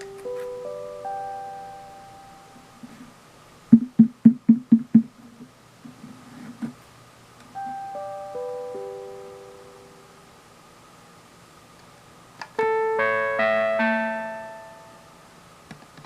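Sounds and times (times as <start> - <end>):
sharp knocks: 3.7 - 5.1.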